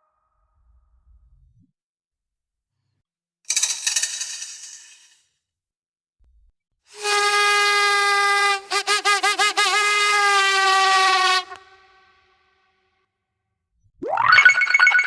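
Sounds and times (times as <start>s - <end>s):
buzzy warbling horn sound effect: 6.9s - 12.4s.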